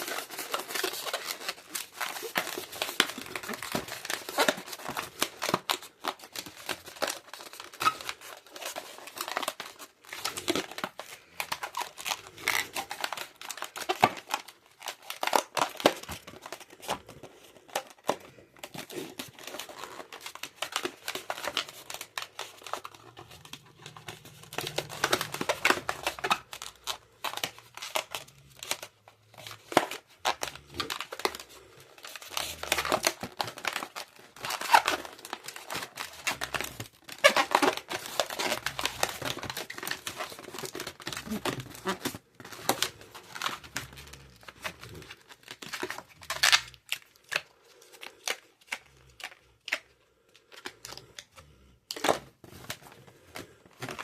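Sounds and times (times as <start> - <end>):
balloons squeaking and rubbing: 6.6 - 15.5, 18.9 - 31.4, 32.0 - 46.8.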